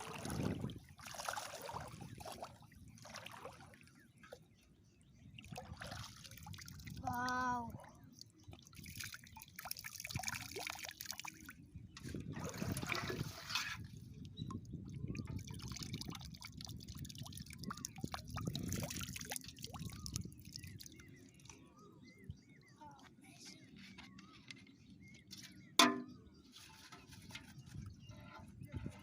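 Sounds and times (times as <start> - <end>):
water splashing and dripping: 0.0 - 4.4, 5.4 - 21.6.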